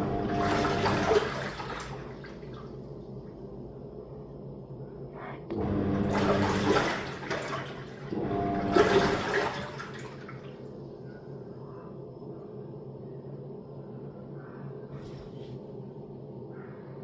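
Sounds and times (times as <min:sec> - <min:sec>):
washing machine water rushing: 0:00.0 - 0:04.0, 0:05.5 - 0:11.2.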